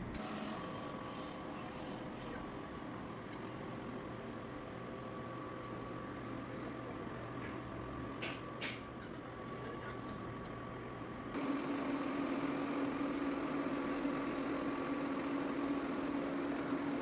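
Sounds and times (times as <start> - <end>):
metal lathe humming: 11.4 - 17.0.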